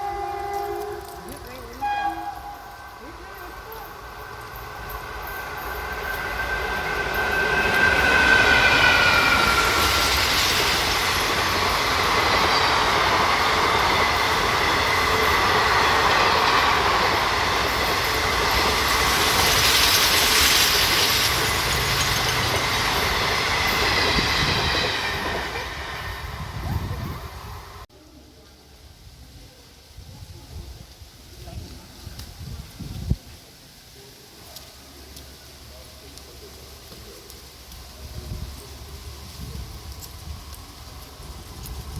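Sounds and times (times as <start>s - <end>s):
train passing: 0.0s - 31.0s, 32.0s - 41.9s
high whine from wheels: 2.4s - 27.9s.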